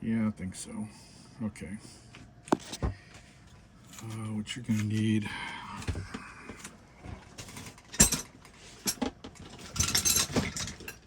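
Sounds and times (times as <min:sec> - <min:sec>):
metal tools clinking: 0:07.4 - 0:11.0.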